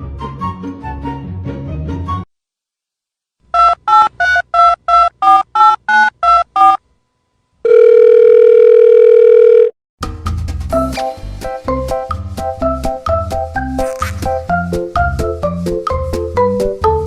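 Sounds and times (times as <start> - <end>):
steady telephone tone: 7.6 - 9.8.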